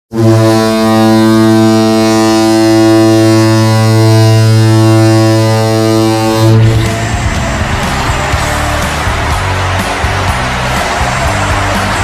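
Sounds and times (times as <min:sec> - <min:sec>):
deep goal horn blast: 0:00.1 - 0:09.7.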